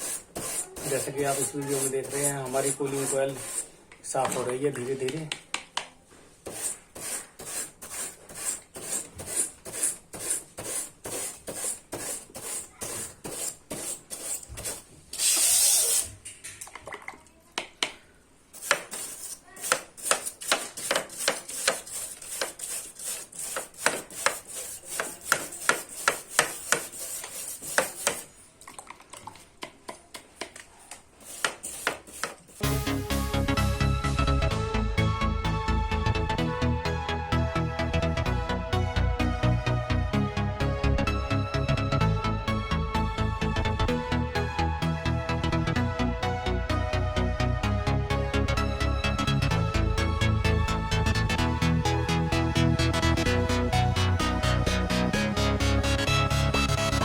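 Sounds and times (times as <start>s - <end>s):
wire brush scrubbing metal fins: 0.0s - 3.7s, 6.5s - 16.1s, 18.5s - 28.4s, 31.2s - 32.6s.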